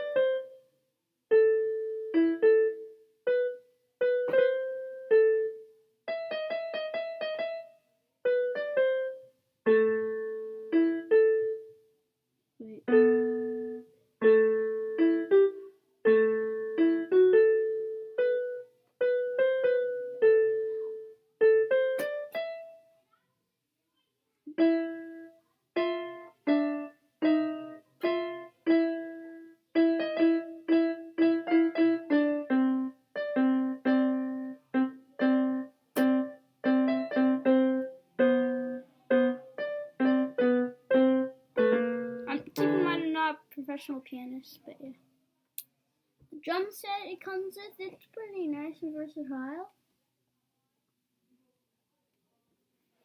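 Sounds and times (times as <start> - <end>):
electronic keyboard piano melody: 0.0 - 0.6, 1.3 - 11.8, 12.9 - 22.8, 24.5 - 43.2.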